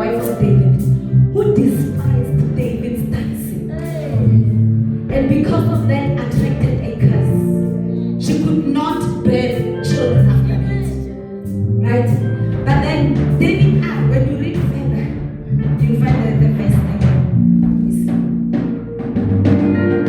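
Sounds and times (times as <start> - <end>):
drum hits: 12.1 - 20.0.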